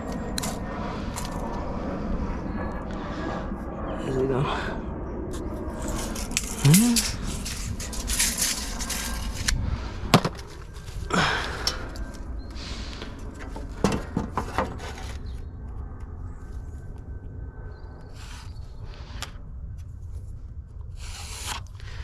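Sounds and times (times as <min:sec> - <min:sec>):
wooden boards knocking and scraping: 0:13.5 - 0:15.2.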